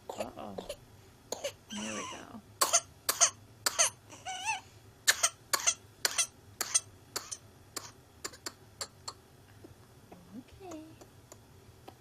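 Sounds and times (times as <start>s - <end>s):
baby coughing: 0.1s - 4.0s, 5.1s - 9.2s.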